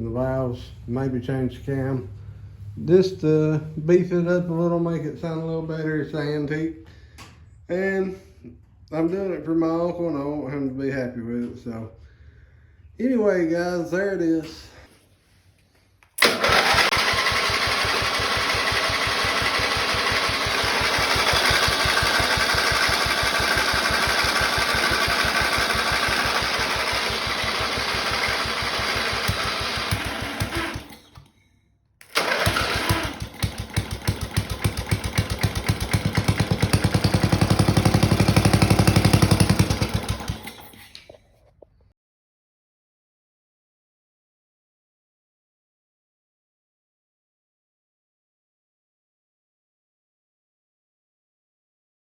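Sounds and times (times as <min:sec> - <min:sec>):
riding mower engine running: 0:16.2 - 0:31.3, 0:32.0 - 0:41.0.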